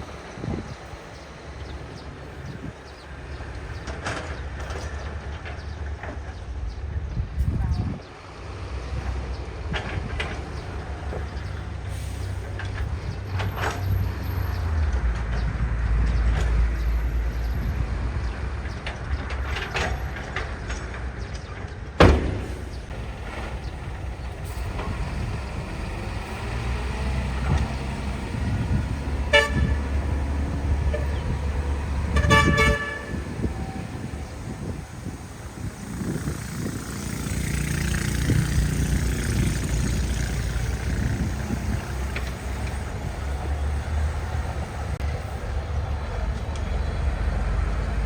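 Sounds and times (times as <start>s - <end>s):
diesel engines droning: 0.0s - 48.0s
vehicle horn toots: 29.2s - 31.4s, 32.0s - 33.9s.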